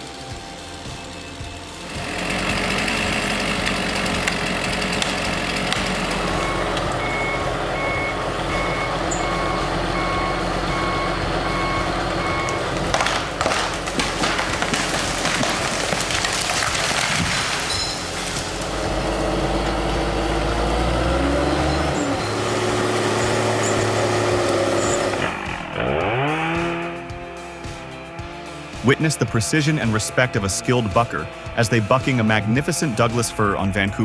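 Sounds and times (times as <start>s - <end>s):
heavy machine engine running: 0.0s - 34.0s
sharp cracks and knocks: 2.2s - 7.0s, 12.4s - 19.1s
reversing alarm beeping: 6.2s - 12.7s, 21.3s - 25.2s.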